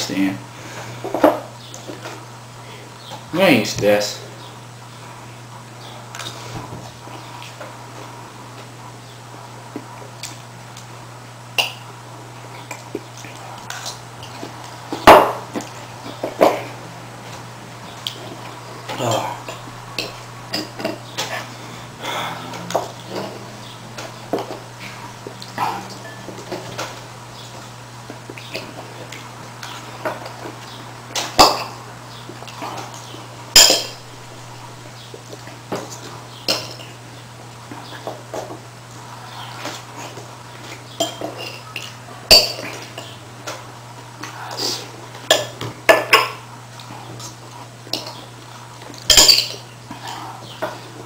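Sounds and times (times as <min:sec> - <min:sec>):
steady low hum: 0:00.0 - 0:51.0
mouth noises while eating: 0:18.0 - 0:26.0, 0:44.2 - 0:45.1, 0:49.8 - 0:51.0.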